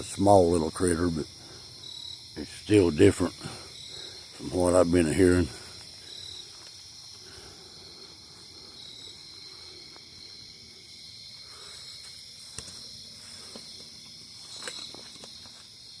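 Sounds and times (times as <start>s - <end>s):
insect chorus trilling: 0.0s - 16.0s.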